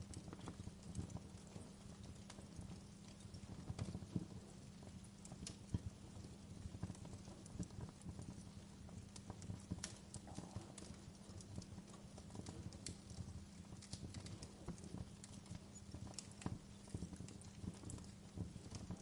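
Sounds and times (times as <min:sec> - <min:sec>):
fire crackling in a fireplace: 0:00.0 - 0:19.0.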